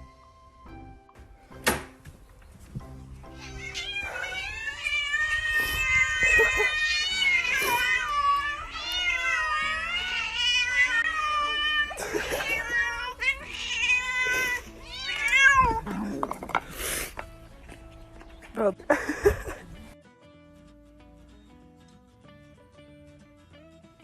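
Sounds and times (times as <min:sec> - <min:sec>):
cat yowling: 0:03.3 - 0:16.3.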